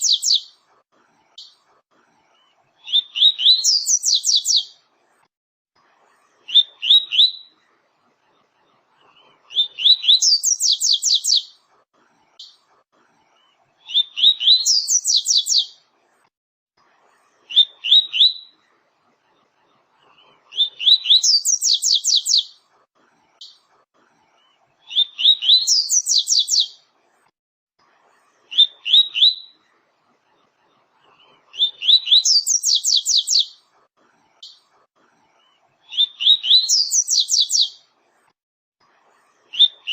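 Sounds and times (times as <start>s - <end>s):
bird singing whistles and trills: 0.0s - 0.5s, 2.9s - 4.7s, 9.6s - 11.5s, 13.9s - 15.7s, 17.5s - 18.5s, 20.6s - 22.5s, 24.9s - 26.8s, 31.6s - 33.6s, 35.9s - 37.8s.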